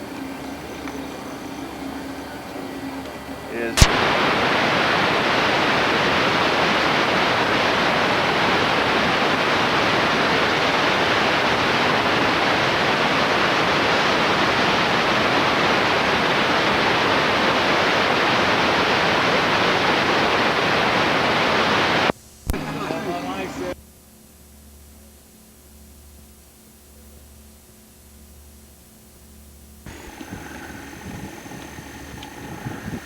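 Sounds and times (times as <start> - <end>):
static hiss: 0.0 - 33.0.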